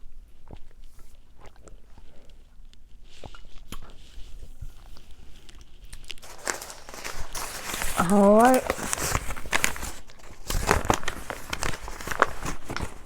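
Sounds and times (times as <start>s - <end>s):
chewing: 0.3s - 9.1s.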